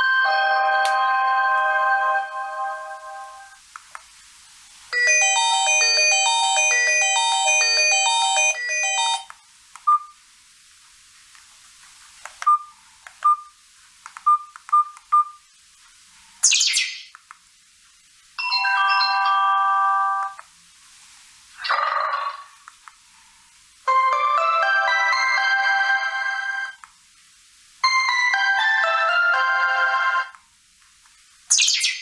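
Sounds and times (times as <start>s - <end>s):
electronic ringtone melody: 0.0s - 3.6s, 5.0s - 9.3s, 18.4s - 20.4s, 23.9s - 26.8s, 27.8s - 30.4s
falling chime: 0.0s - 3.6s, 18.4s - 20.3s
held electronic chord: 0.0s - 3.6s.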